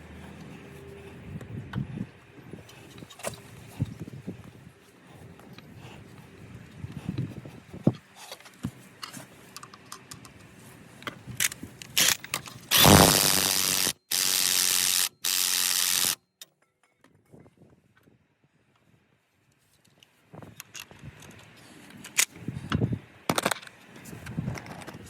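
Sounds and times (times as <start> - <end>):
power tool running: 12.0 - 16.2.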